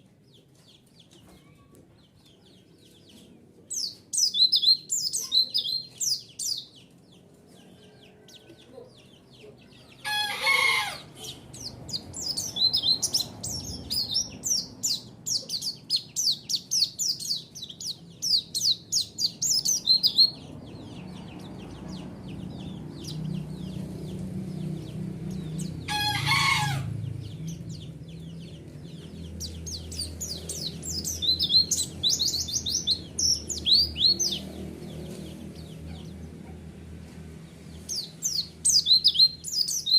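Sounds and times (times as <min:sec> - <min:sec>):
birds chattering trills: 0:00.0 - 0:36.6
rooster crowing: 0:07.6 - 0:08.7, 0:10.0 - 0:11.3, 0:25.8 - 0:27.0.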